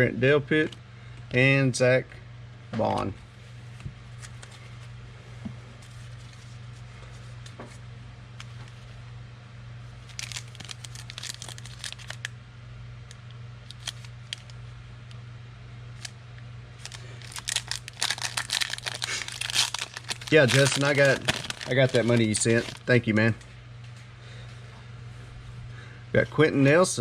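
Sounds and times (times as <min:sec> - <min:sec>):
steady low hum: 0:00.0 - 0:27.0
foil wrappers tearing and crinkling: 0:10.0 - 0:12.3, 0:13.7 - 0:14.6, 0:16.8 - 0:23.2.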